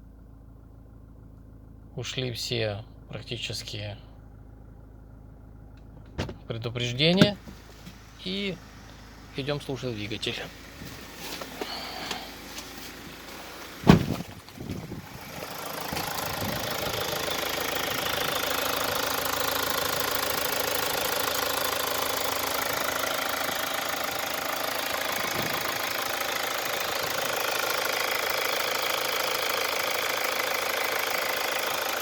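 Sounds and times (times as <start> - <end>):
diesel engine idling: 0.0 - 32.0
loud thump: 6.1 - 6.5, 13.8 - 14.8.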